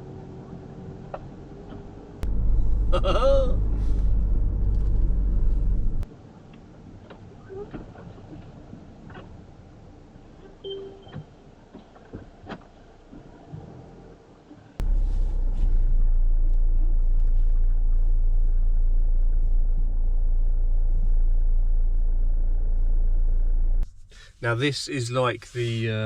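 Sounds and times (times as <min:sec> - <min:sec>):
van rumbling from inside cabin: 0:00.0 - 0:06.1, 0:14.8 - 0:26.0.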